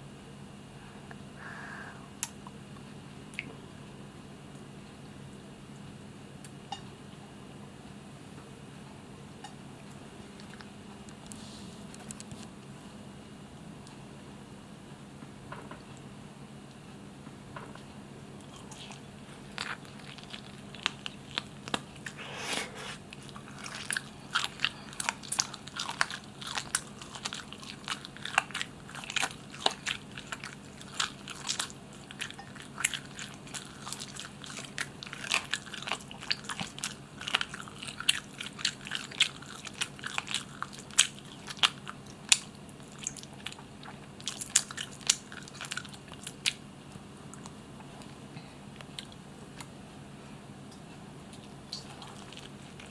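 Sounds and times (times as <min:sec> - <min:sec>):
faint steady hum: 0:00.0 - 0:52.9
chewing and crunching: 0:09.8 - 0:12.5, 0:17.6 - 0:48.2, 0:51.3 - 0:52.9.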